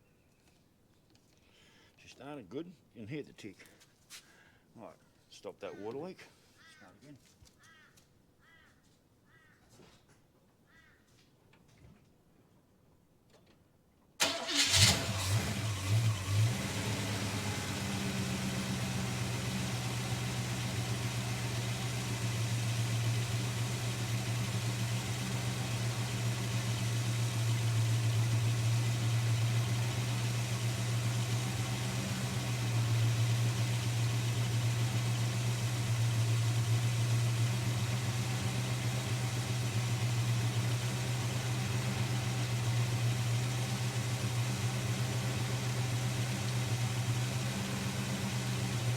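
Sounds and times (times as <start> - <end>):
car engine cranking and idling: 14.2 - 48.9.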